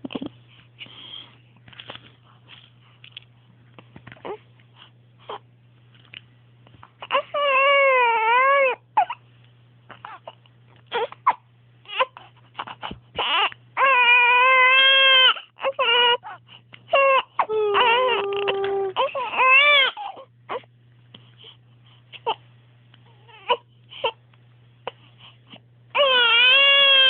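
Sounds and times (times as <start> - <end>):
baby crying: 7.0 - 9.2, 9.9 - 20.7, 23.1 - 24.2, 25.9 - 27.0.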